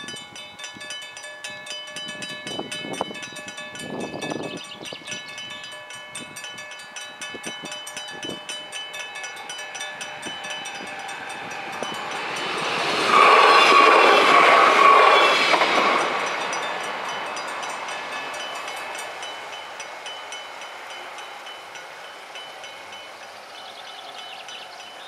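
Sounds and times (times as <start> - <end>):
level crossing bell ringing: 0.0 - 13.4
train passing: 0.0 - 25.0
steady high tone: 1.2 - 25.0.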